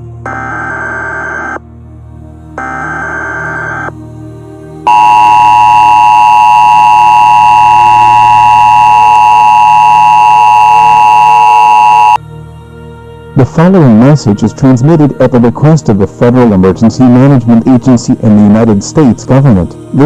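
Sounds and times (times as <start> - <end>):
two-tone attention signal: 4.9 - 12.2
warbling data burst: 4.9 - 12.2.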